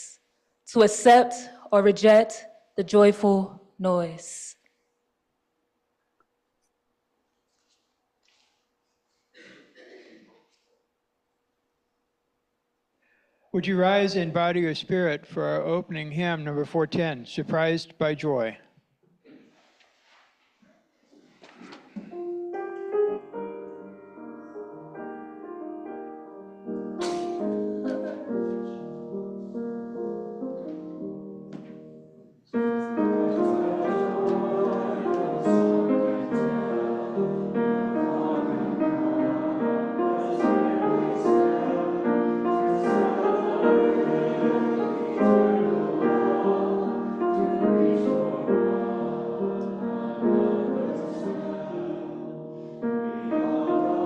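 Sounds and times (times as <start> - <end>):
piano playing: 22.0 - 54.0
congregation singing a hymn: 23.0 - 31.3, 32.6 - 54.0.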